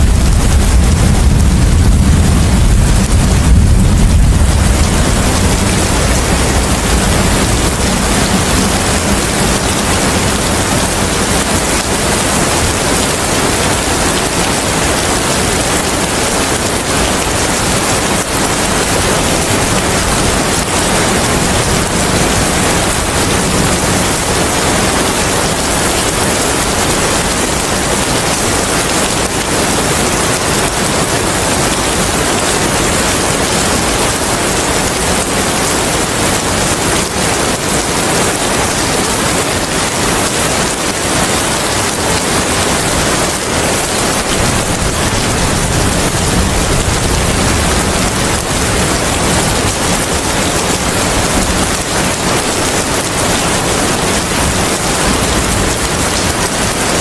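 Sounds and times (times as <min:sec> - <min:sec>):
low rumble: 0:00.0 - 0:11.4
steady rain: 0:00.0 - 0:57.0.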